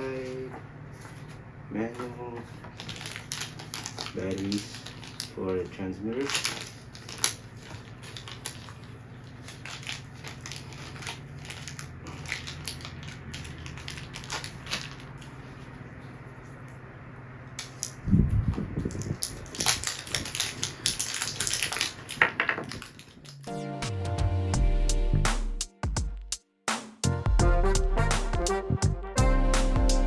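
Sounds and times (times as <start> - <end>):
faint clicks and rustles: 0.0 - 16.8, 17.5 - 23.5
plastic packaging crinkling: 2.1 - 16.2, 18.8 - 23.5.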